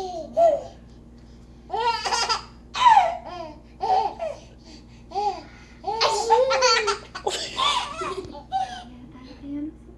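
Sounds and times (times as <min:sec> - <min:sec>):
baby laughing: 0:01.7 - 0:04.4, 0:05.1 - 0:08.8.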